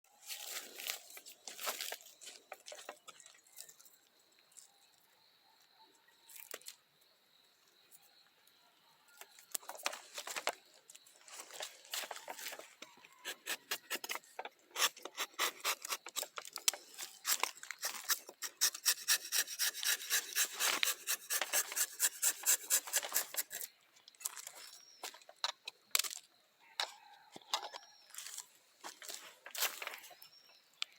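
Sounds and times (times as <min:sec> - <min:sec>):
hand tool rasping wood: 0:13.2 - 0:23.7.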